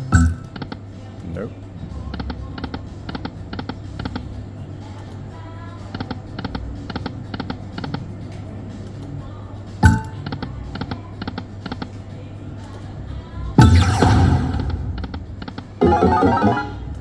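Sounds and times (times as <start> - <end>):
electronic jingle: 13.6 - 17.0
low hum: 13.6 - 17.0.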